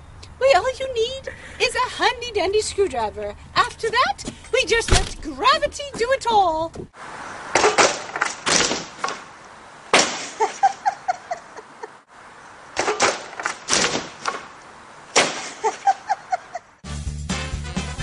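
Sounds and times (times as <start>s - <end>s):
people laughing: 10.4s - 12.0s, 15.6s - 16.8s
upbeat swing music: 16.8s - 18.0s.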